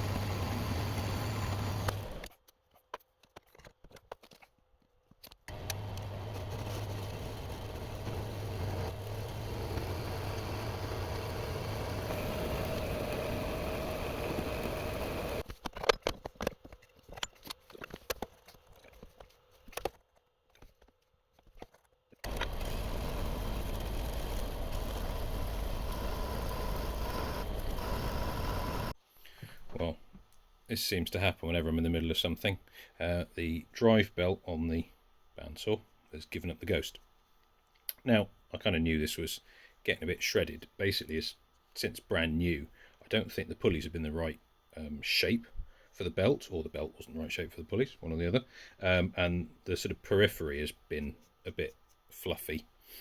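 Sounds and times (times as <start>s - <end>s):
metal-cutting bandsaw running: 0.0s - 2.2s, 5.5s - 15.4s, 22.2s - 29.0s.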